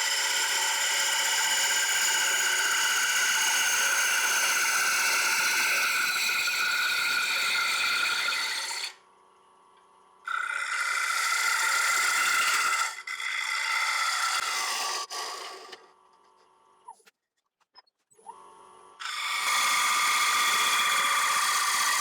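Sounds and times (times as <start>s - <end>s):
lathe tool cutting wood: 0.0s - 9.0s, 10.3s - 15.8s, 19.0s - 22.0s.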